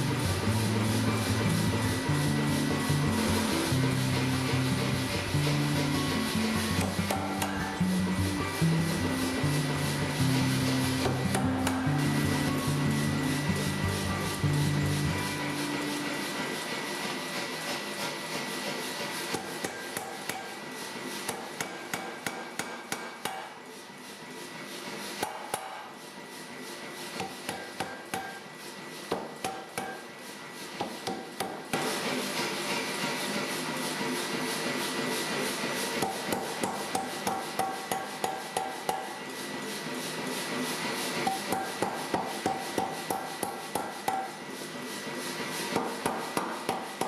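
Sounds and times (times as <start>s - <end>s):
hammer striking steel bar: 3.4s - 8.4s, 9.0s - 13.1s, 19.3s - 23.6s, 25.2s - 25.9s, 27.2s - 28.5s, 29.1s - 30.1s, 30.8s - 32.0s, 36.0s - 39.2s, 41.2s - 44.4s, 45.7s - 47.0s.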